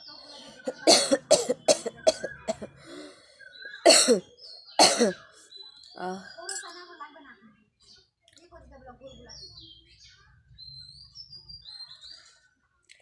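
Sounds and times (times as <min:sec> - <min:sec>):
person coughing hard: 0:00.6 - 0:02.8, 0:03.8 - 0:04.2, 0:04.8 - 0:05.2.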